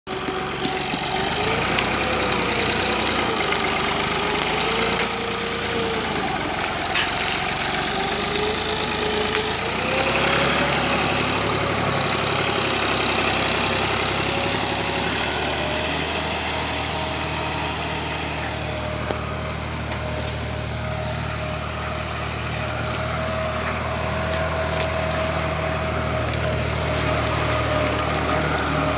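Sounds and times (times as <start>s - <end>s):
tractor diesel engine running: 0.0s - 28.9s.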